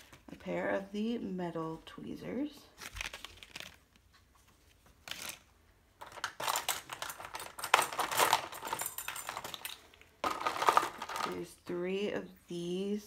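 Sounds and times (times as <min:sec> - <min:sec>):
plastic and metal tools clattering: 0:06.0 - 0:11.5.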